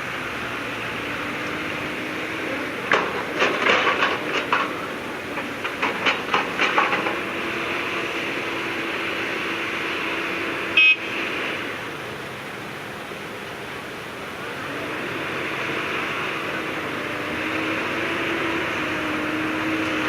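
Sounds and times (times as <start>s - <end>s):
heavy machinery running: 0.0s - 12.5s, 14.0s - 20.0s
metallic clanks and knocks: 2.8s - 7.8s
horn toot: 10.8s - 11.2s.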